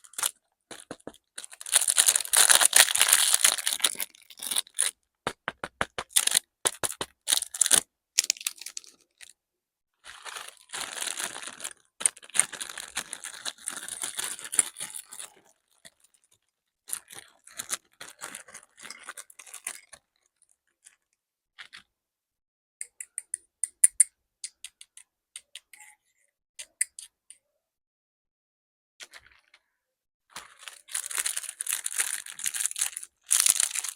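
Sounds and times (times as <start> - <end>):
plastic packaging crinkling: 0.0 - 9.3, 10.0 - 20.5, 30.3 - 33.9.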